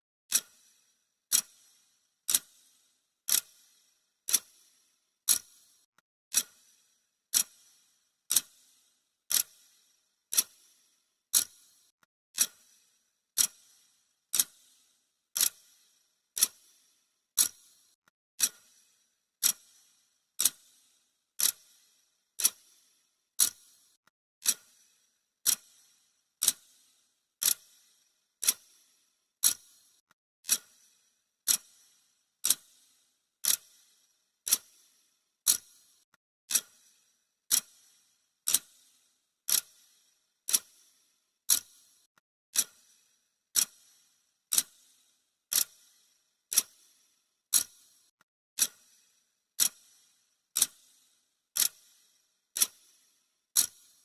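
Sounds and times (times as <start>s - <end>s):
clock ticking: 21.4s - 21.6s.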